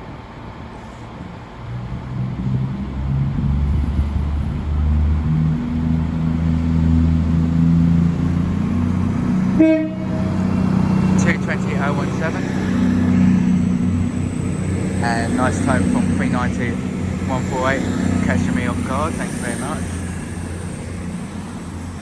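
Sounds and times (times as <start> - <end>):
train engines running: 0.0 - 22.0
train horn tone: 9.5 - 12.2.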